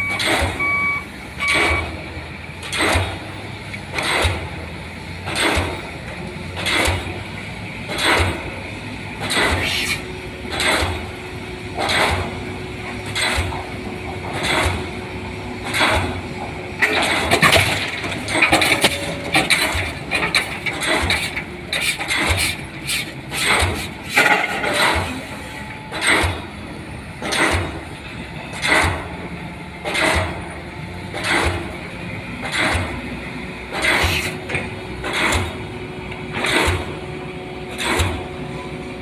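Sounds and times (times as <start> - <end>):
pile hammer blows: 29.8 - 30.4, 32.4 - 33.0.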